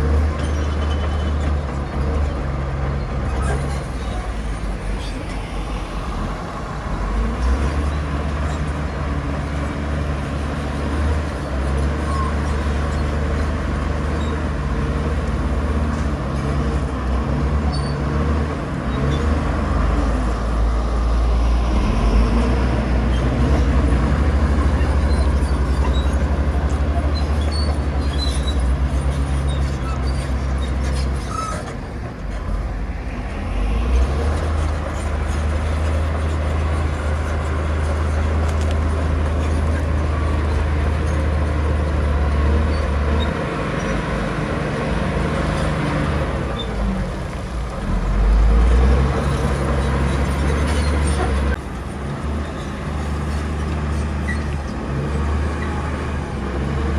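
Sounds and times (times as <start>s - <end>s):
bulldozer diesel engine droning: 0.0s - 56.9s.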